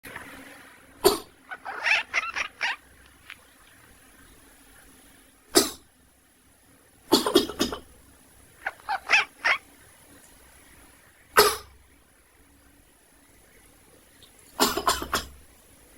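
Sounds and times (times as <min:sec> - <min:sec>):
person coughing: 0:01.0 - 0:01.3, 0:05.6 - 0:05.8, 0:07.1 - 0:07.8, 0:11.4 - 0:11.7, 0:14.6 - 0:15.3
cat making quack-like calls: 0:01.0 - 0:02.9, 0:08.6 - 0:09.7.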